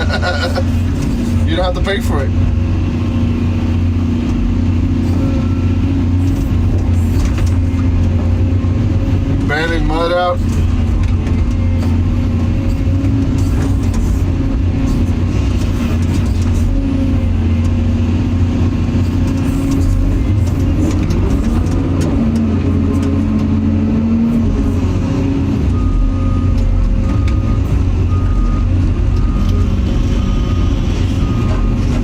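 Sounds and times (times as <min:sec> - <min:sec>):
excavator engine and hydraulics: 0:00.0 - 0:32.0
repeated short beep: 0:25.7 - 0:31.9.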